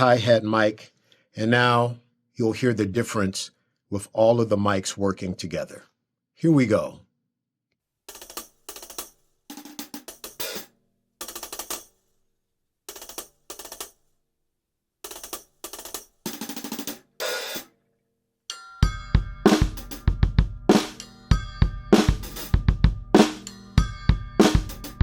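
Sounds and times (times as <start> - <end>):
drum groove with bass drum: 8.1 - 11.8, 15.1 - 17.7, 18.8 - 25.0
hi-hat and cymbal strikes: 16.3 - 17.7, 18.5 - 25.0
light snare drum: 19.5 - 21.0, 22.0 - 23.5.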